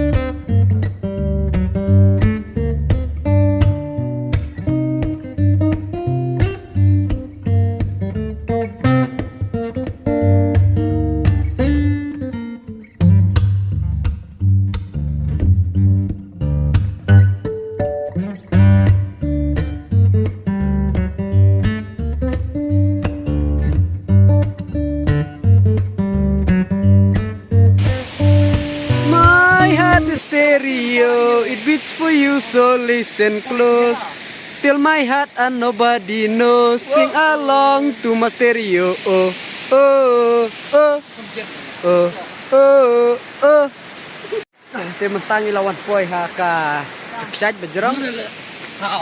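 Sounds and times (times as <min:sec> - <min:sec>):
strummed acoustic guitar music: 0:00.0 - 0:34.0
bass line: 0:18.5 - 0:30.2.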